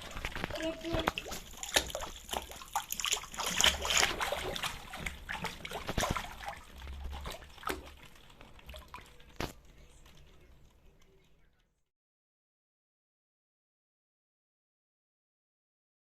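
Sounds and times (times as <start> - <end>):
water splashing and trickling: 0.0 - 11.4.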